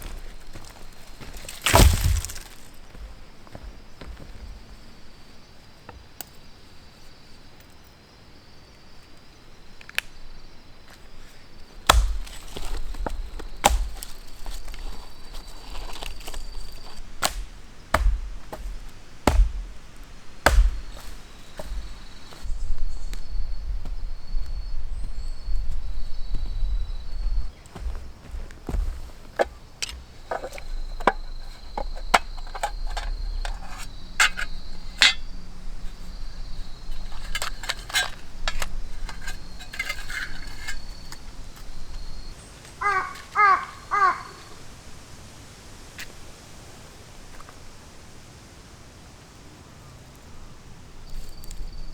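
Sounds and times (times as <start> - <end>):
blade chopping firewood: 0.0 - 2.9, 11.8 - 22.5, 27.5 - 35.3
faint high insect call: 0.0 - 51.9.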